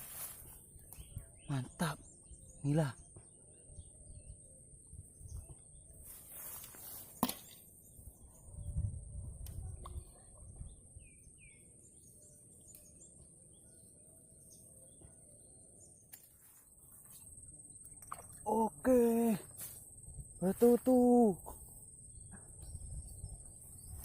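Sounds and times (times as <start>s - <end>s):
high-pitched insect buzz: 9.8s - 24.0s.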